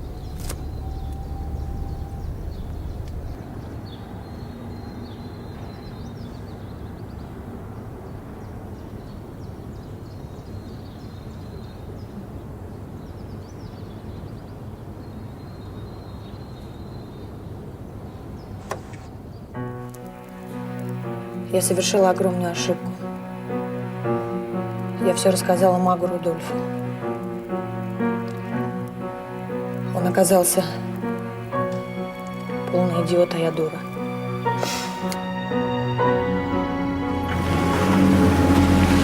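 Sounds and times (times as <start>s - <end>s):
low rumble: 0.0s - 5.0s
faint high chirps: 0.0s - 5.4s.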